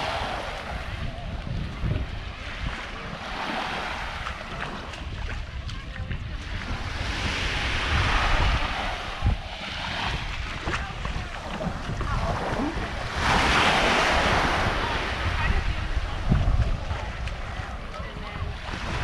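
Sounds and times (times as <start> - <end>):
surf washing on beach: 0.0 - 19.0
wind buffeting microphone: 0.0 - 19.0.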